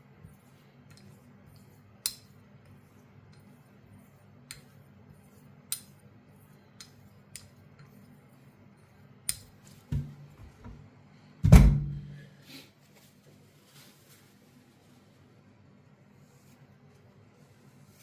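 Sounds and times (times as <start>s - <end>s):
heavy thump: 11.4s - 12.1s.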